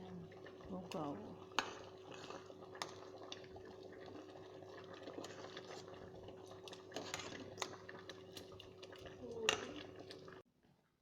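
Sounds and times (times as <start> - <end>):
pot of porridge bubbling: 0.0 - 11.0.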